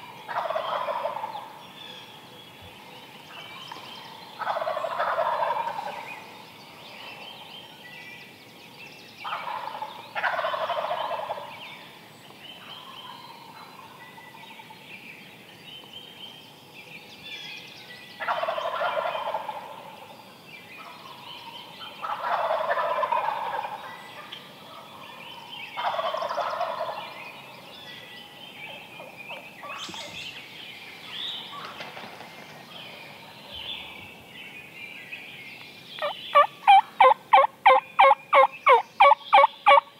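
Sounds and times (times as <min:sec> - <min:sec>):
turkeys gobbling: 0:00.3 - 0:01.5, 0:04.4 - 0:06.0, 0:09.2 - 0:11.5, 0:18.3 - 0:19.8, 0:22.0 - 0:24.9, 0:25.8 - 0:27.0, 0:36.0 - 0:39.8
small birds chirping: 0:20.2 - 0:39.9.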